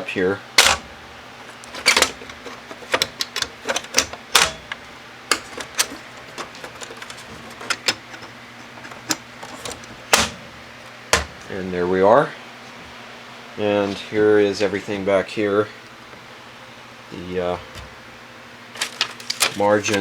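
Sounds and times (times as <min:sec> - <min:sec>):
typewriter cover clicks and knocks: 0:00.6 - 0:00.9, 0:01.6 - 0:10.4, 0:11.2 - 0:11.4.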